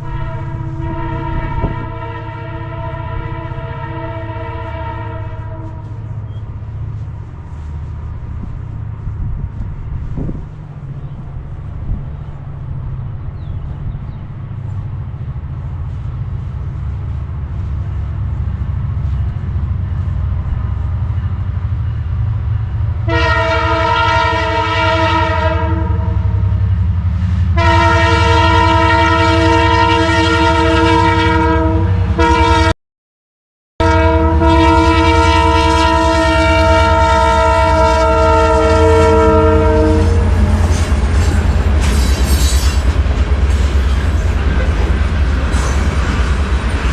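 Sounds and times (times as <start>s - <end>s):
train air horn blasts: 0.0s - 8.5s, 23.0s - 26.5s, 27.4s - 32.8s, 33.8s - 42.9s
diesel locomotive engine rumble: 0.0s - 32.7s, 33.8s - 46.9s.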